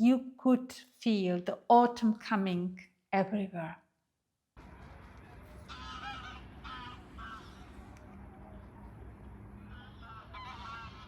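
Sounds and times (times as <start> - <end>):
low background rumble: 4.6 - 11.0
geese honking: 5.6 - 7.9, 9.6 - 11.0.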